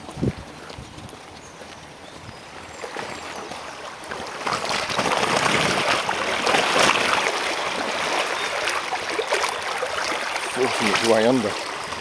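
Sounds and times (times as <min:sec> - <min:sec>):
floodwater rushing and splashing: 0:02.4 - 0:12.0.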